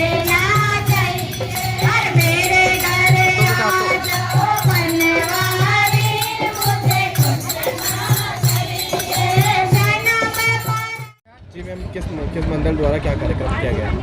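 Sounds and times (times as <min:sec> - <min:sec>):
steady drum beat: 0:00.0 - 0:11.2
tambourine jingling: 0:00.0 - 0:11.2
women singing together: 0:00.0 - 0:11.2.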